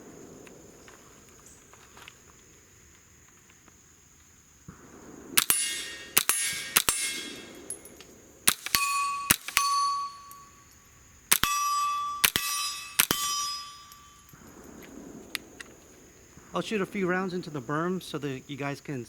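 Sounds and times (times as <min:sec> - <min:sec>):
suppressed rifle shots with metallic ring: 0:05.4 - 0:14.5.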